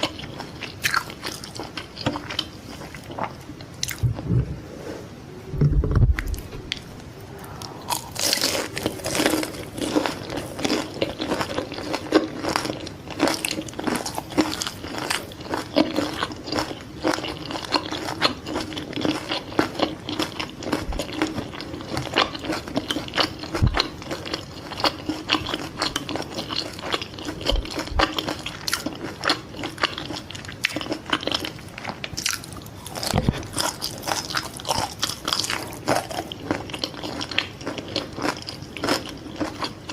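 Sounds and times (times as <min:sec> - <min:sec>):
crunchy chewing: 0:00.0 - 0:04.0, 0:07.6 - 0:39.9.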